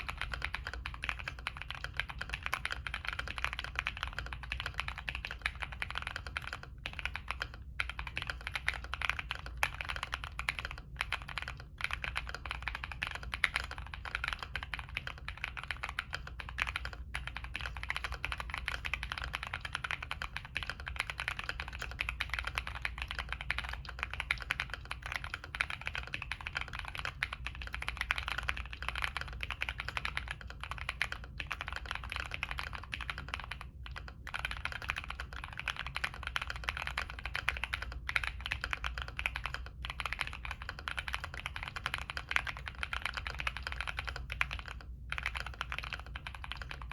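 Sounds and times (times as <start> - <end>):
mechanical keyboard typing: 0.0 - 46.9.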